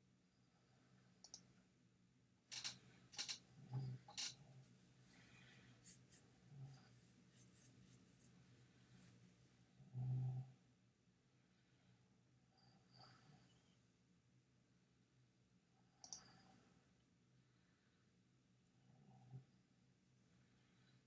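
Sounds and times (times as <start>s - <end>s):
faint clicks: 1.2s - 1.5s, 2.5s - 3.4s, 16.0s - 16.3s
scratchy strokes: 2.5s - 3.4s, 4.1s - 9.3s.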